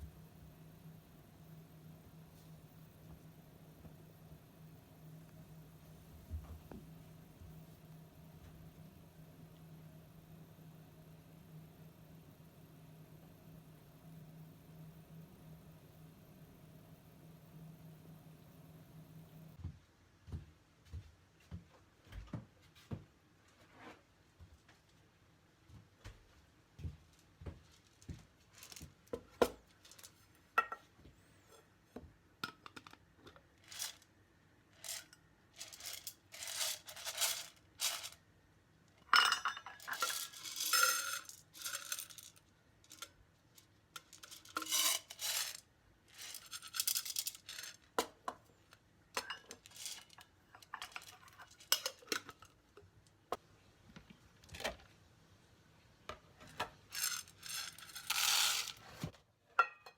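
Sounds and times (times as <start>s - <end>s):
dishes and utensils clinking: 39.1s - 41.9s, 49.2s - 52.4s, 59.5s - 59.9s.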